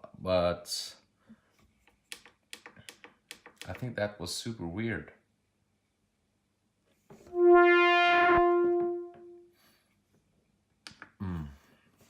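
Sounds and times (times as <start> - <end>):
synthesizer tone: 7.3 - 9.4.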